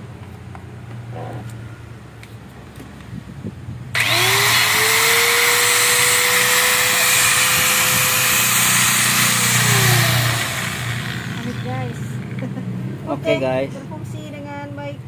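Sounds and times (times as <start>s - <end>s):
angle grinder whining: 4.0s - 12.4s.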